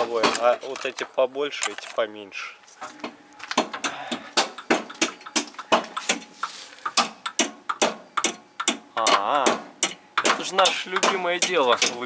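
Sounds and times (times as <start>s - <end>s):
sharp metallic taps: 3.6s - 12.0s.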